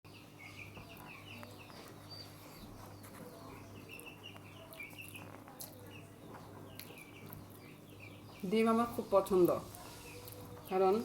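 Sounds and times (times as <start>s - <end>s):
birds chirping faintly: 0.1s - 11.0s.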